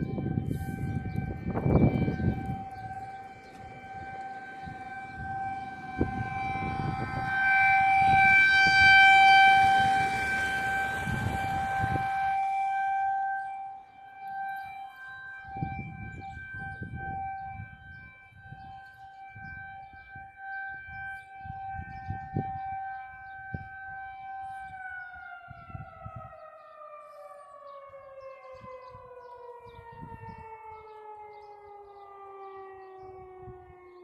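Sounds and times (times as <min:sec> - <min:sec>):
tornado siren steady tone: 0:00.0 - 0:34.0
low rumbling noise: 0:00.1 - 0:12.6.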